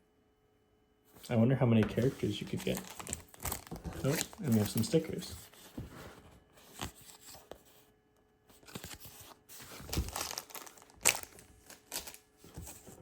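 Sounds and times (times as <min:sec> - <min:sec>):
plastic wrapper crinkling: 0:02.4 - 0:05.2, 0:08.6 - 0:12.3.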